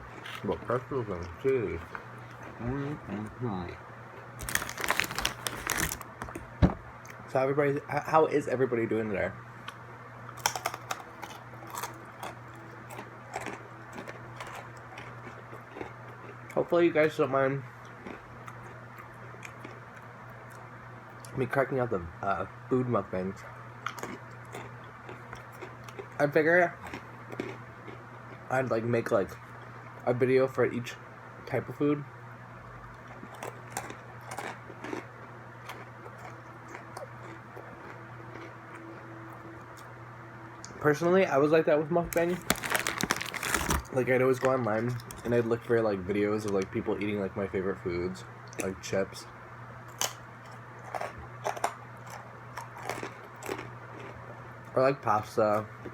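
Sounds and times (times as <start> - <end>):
steady low hum: 0.0 - 55.9
pretzels being crunched: 4.4 - 6.4, 10.4 - 15.9, 42.1 - 45.4, 49.9 - 54.2
chewing and mouth clicks: 10.4 - 16.4, 32.9 - 35.1, 35.7 - 39.1, 49.9 - 54.2.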